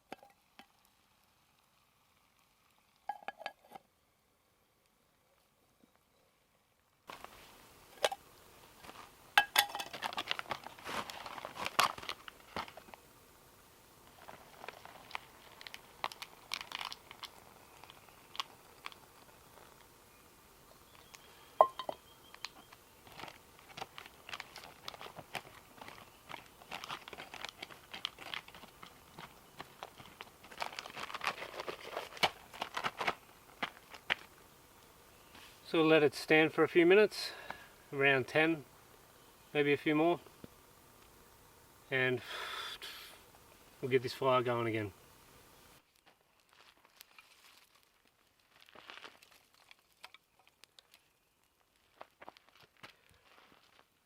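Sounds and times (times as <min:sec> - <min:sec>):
packaging crinkling and tearing: 0:09.9 - 0:13.0, 0:14.1 - 0:19.0, 0:22.4 - 0:34.3, 0:45.9 - 0:53.8.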